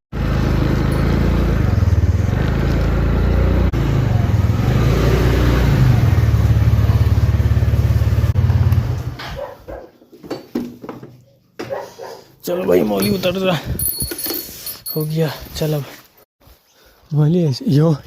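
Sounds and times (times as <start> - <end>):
scooter engine running: 0.1 - 9.3.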